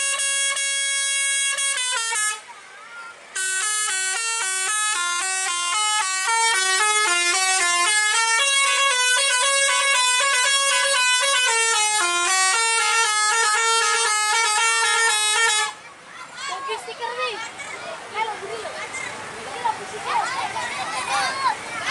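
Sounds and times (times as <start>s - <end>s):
musical bus horn melody: 0.0s - 2.5s, 3.4s - 15.8s.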